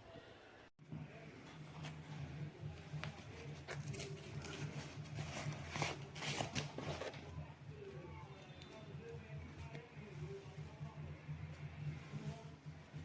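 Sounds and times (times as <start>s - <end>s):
steady low hum: 0.8s - 13.0s
handling rustles and clicks: 2.9s - 9.9s.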